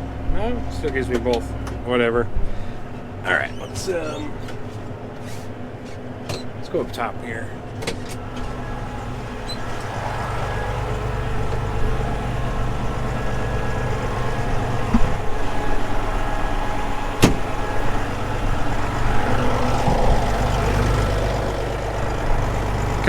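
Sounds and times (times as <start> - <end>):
tractor diesel engine running: 0.0 - 23.0
low thump: 14.9 - 15.3, 17.2 - 17.6.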